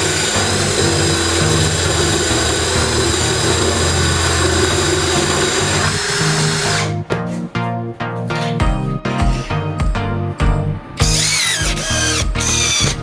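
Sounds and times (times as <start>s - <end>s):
power tool whining: 0.0s - 7.0s, 11.0s - 13.0s
background music with bass line: 0.0s - 13.0s.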